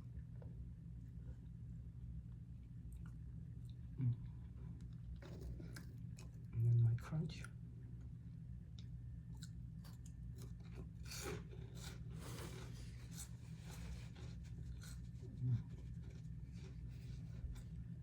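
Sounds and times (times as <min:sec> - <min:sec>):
steady low hum: 0:00.0 - 0:18.0
crunchy chewing: 0:04.8 - 0:06.5, 0:08.8 - 0:17.9.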